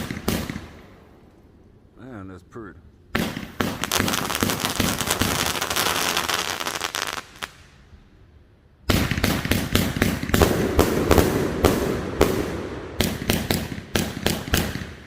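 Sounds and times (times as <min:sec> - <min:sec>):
fireworks crackling: 0:03.2 - 0:07.8, 0:08.9 - 0:15.0.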